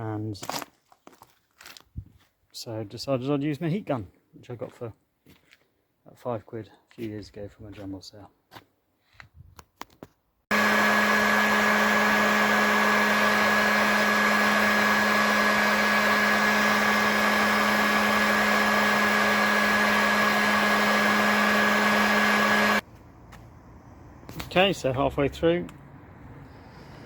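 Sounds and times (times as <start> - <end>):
heat gun blowing: 10.5 - 22.8.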